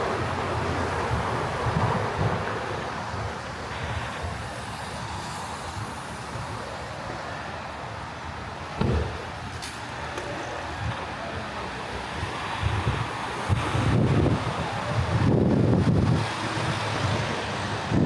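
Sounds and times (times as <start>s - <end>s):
wind buffeting microphone: 0.0s - 4.0s, 12.0s - 18.0s
road traffic passing: 0.0s - 18.0s.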